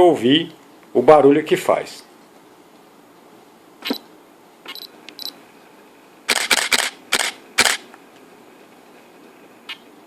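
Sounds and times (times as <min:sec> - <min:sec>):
faint lens focusing sounds: 0:03.8 - 0:05.4
camera shutter clicks: 0:06.3 - 0:07.9.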